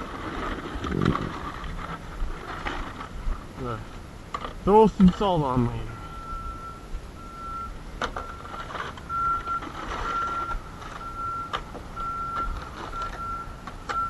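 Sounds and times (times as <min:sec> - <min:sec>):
reversing alarm beeping: 0:05.9 - 0:14.0.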